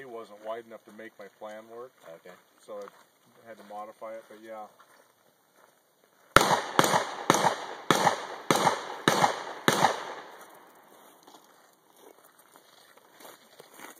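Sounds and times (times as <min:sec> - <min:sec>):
shotgun shots with echo: 0:06.4 - 0:10.6.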